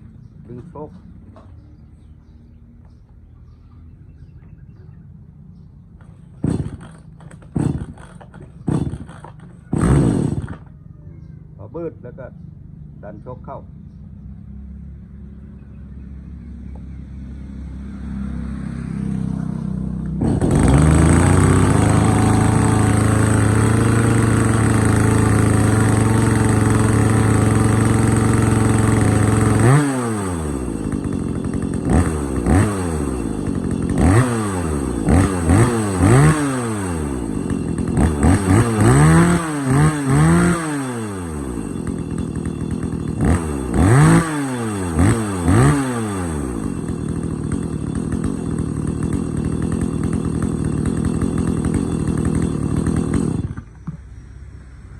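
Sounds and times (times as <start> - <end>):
chainsaw running and revving: 6.0 - 10.8, 16.7 - 54.0.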